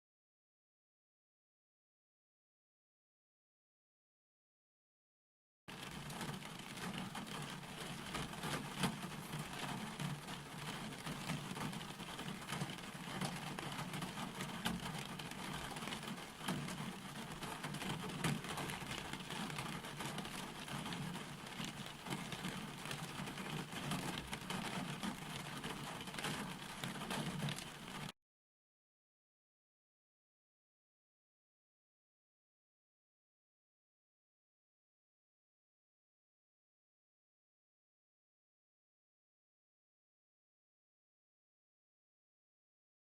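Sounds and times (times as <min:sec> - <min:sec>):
raindrop impacts: 0:05.7 - 0:28.1
steady rain falling: 0:05.7 - 0:28.1.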